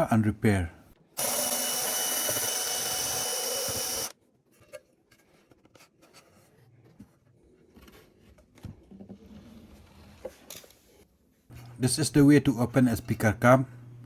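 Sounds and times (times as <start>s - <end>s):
scraping and handling noises: 4.4s - 11.8s.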